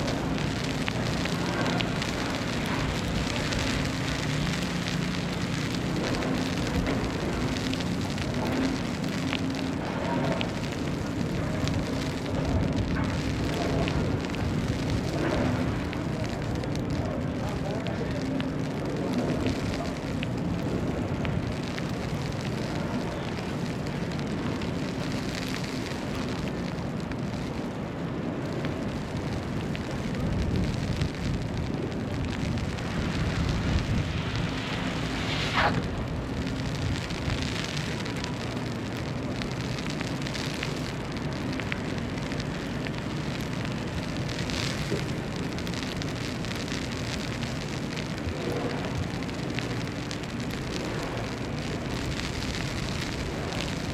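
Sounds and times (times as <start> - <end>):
crackling hiss: 0.0 - 53.9
distant traffic: 0.0 - 53.9
wind rumble: 0.0 - 53.9.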